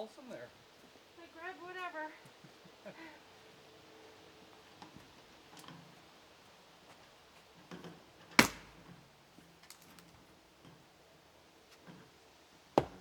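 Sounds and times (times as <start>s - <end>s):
firewood knocking onto wood pile: 8.3s - 8.9s, 12.8s - 13.0s.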